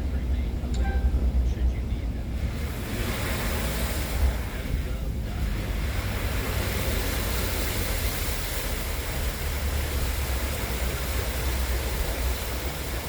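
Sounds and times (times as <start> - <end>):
vehicle low rumble: 0.0 - 13.0
water rushing: 0.0 - 13.0.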